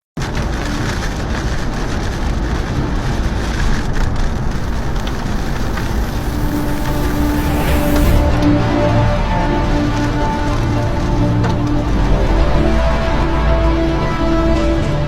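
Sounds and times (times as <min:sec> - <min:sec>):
heavy rain: 0:00.2 - 0:15.0
low rumble: 0:00.2 - 0:15.0
storm wind: 0:00.2 - 0:15.0.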